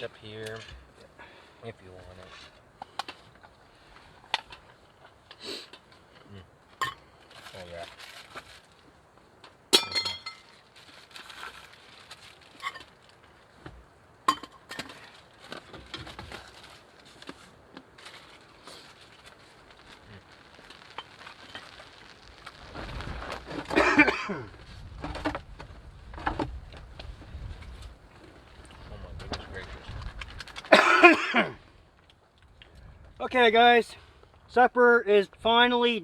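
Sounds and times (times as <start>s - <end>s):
forks clinking on plates: 9.8s - 10.5s.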